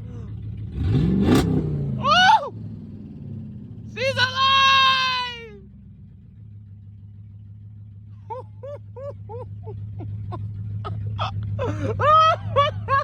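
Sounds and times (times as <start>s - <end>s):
car engine running: 0.0s - 13.0s
person laughing high-pitched: 8.3s - 13.0s.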